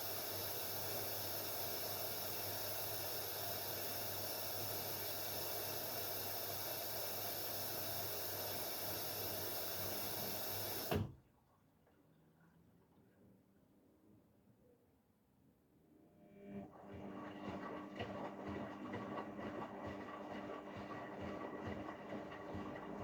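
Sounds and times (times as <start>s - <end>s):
water hissing through inlet valve: 0.0s - 11.1s
washing machine low hum: 0.0s - 11.2s, 16.3s - 23.0s.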